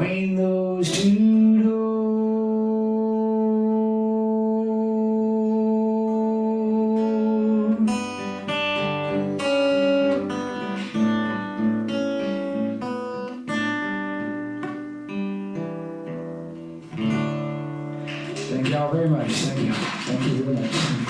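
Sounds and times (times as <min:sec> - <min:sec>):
acoustic guitar picking and strumming: 0:00.0 - 0:21.0.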